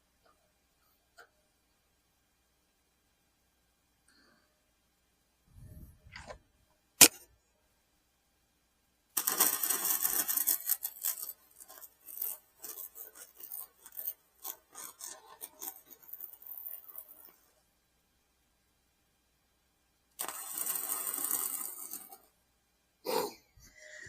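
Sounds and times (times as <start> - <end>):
sharp metallic click: 7.0 - 7.2
scraping on metal: 9.2 - 17.6.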